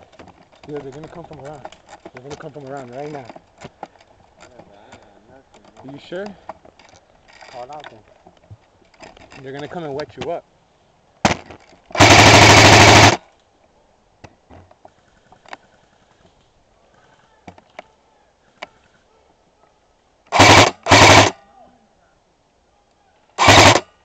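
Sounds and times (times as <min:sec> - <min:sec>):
airsoft gun full-auto bursts: 0:11.9 - 0:13.2, 0:20.3 - 0:21.4, 0:23.4 - 0:24.0.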